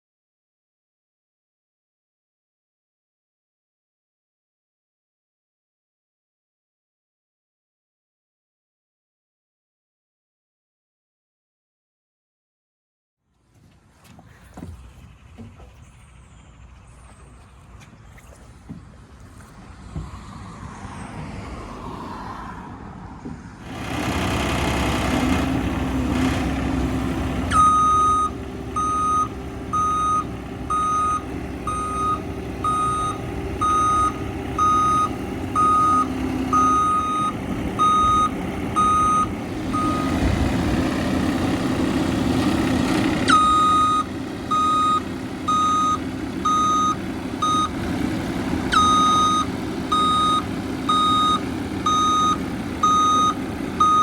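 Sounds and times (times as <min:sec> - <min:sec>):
skid steer engine running: 0:23.6 - 0:54.0
reversing alarm beeping: 0:27.5 - 0:40.2, 0:43.3 - 0:47.8, 0:48.7 - 0:54.0.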